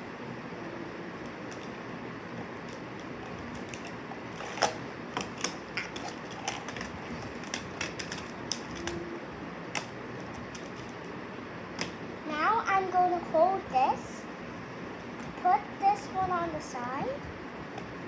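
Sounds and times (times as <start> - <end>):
plastic blocks clicking together: 3.5 - 9.0.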